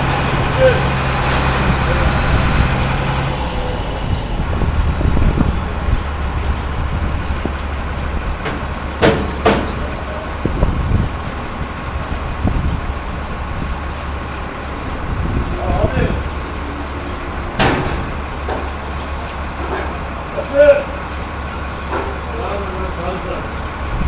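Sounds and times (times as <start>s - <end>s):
heavy machinery humming: 0.0s - 24.0s
knocks: 8.4s - 9.9s.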